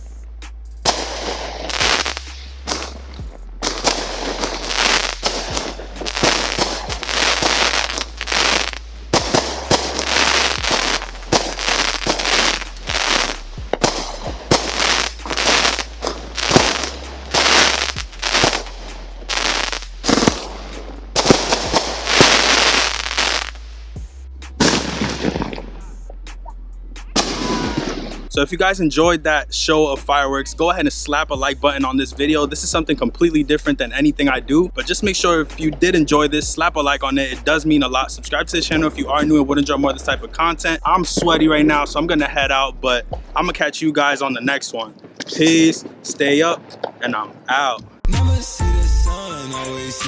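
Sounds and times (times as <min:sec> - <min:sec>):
firework bangs and crackling: 0:00.8 - 0:24.0, 0:24.6 - 0:25.8, 0:27.2 - 0:28.3.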